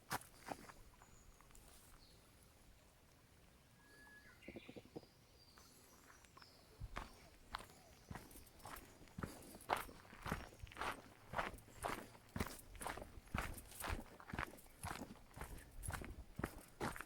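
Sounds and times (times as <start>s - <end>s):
footsteps on forest trail: 0.0s - 2.1s, 5.5s - 17.0s
whistled bird call: 3.8s - 4.6s
high bird calls: 3.8s - 11.0s.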